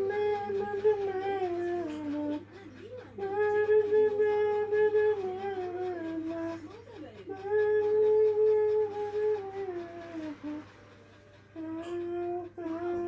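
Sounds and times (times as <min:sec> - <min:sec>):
person humming slow tune: 0:00.0 - 0:02.5, 0:11.6 - 0:13.0.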